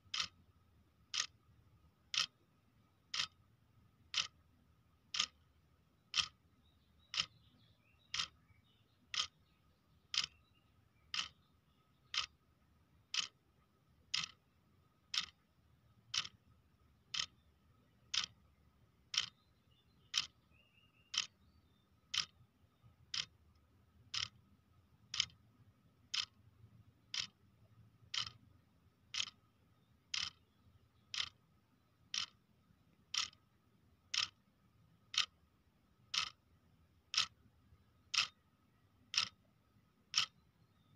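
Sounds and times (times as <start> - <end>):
clock ticking: 0.0 - 1.4, 2.0 - 2.4, 3.1 - 3.4, 4.0 - 4.4, 5.0 - 5.4, 6.1 - 6.4, 7.1 - 7.4, 8.1 - 8.4, 9.1 - 9.4, 10.1 - 10.4, 11.1 - 11.4, 12.0 - 12.4, 13.0 - 13.4, 14.1 - 14.4, 15.0 - 15.4, 16.1 - 16.5, 17.1 - 17.4, 18.0 - 18.4, 19.1 - 19.4, 20.1 - 20.4, 21.1 - 21.4, 22.1 - 22.4, 23.1 - 24.5, 25.1 - 25.5, 26.1 - 27.4, 28.0 - 29.5, 30.1 - 30.5, 31.1 - 31.4, 32.1 - 32.4, 33.1 - 33.5, 34.1 - 34.5, 35.1 - 35.5, 36.1 - 36.5, 37.1 - 37.4, 38.1 - 39.5, 40.1 - 40.4.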